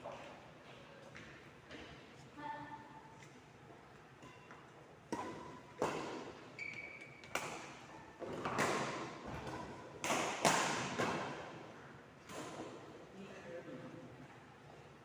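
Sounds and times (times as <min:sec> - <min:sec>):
high squeak: 0:06.6 - 0:07.2
ball strikes and bounces: 0:07.2 - 0:11.4.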